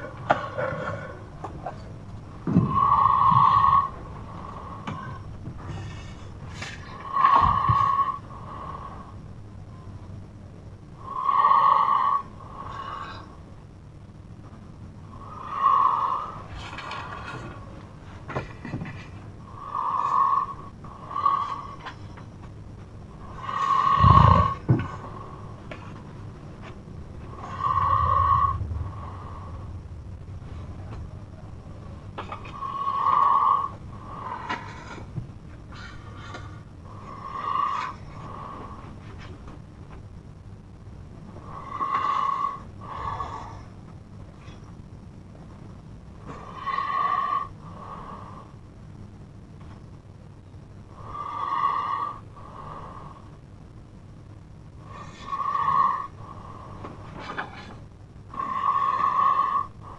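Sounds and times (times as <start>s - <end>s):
soft breaths: 0.0s - 59.9s
faint breath: 2.7s - 9.3s, 23.2s - 39.4s
person snoring loudly: 23.2s - 25.2s, 27.3s - 29.7s, 32.2s - 34.8s.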